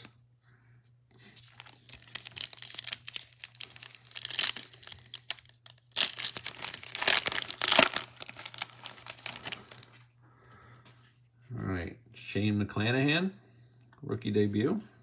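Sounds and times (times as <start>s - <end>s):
foil wrapper crinkling and tearing: 1.4s - 10.1s.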